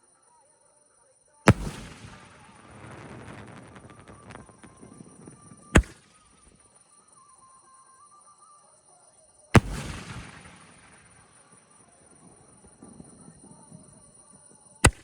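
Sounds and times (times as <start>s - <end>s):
firework report with echo: 1.5s - 6.6s, 9.6s - 15.0s.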